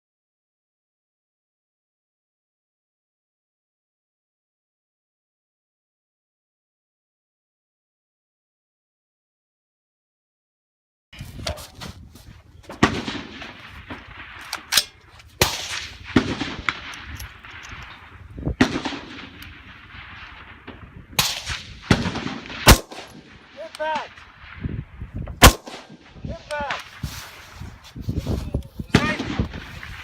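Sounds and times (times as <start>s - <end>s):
rifle shots with rolling echo: 12.7s - 27.8s, 28.9s - 30.0s.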